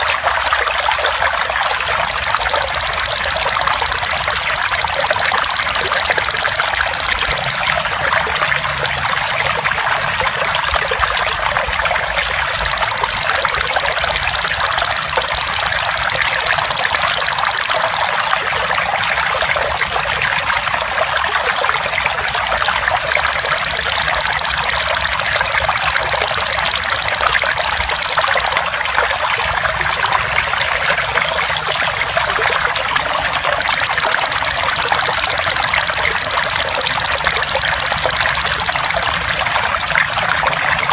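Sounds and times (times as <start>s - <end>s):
insect high trill: 2.0s - 7.6s, 12.6s - 18.1s, 23.1s - 28.6s, 33.6s - 39.1s.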